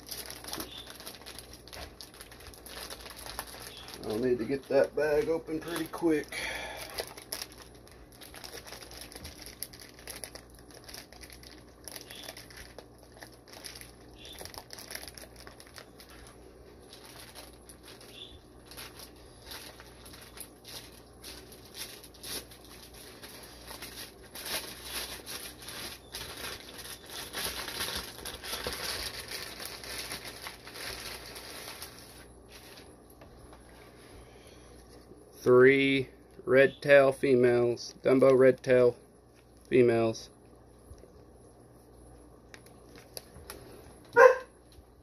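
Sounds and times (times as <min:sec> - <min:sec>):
plastic bags crinkling: 0:00.0 - 0:33.0, 0:42.5 - 0:44.4.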